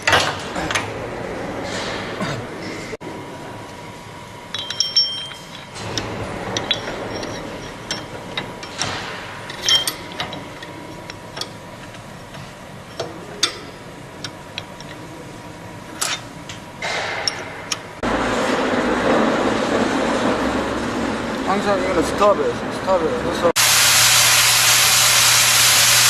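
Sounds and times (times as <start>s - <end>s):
nails clinking against metal: 4.5s - 12.0s.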